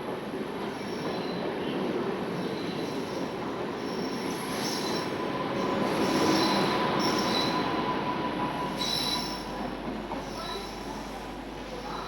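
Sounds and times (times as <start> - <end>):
train wheels rumbling on rails: 0.0 - 12.0
faint high wheel squeals: 3.8 - 10.9.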